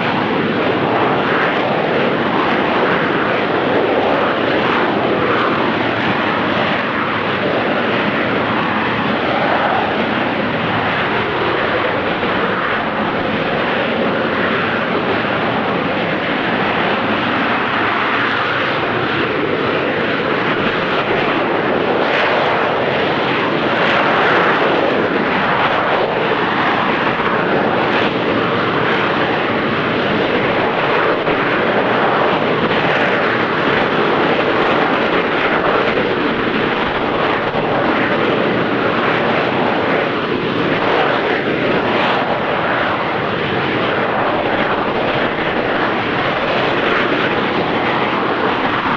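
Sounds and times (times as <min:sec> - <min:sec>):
jet engine rush while hovering: 0:00.0 - 0:48.9.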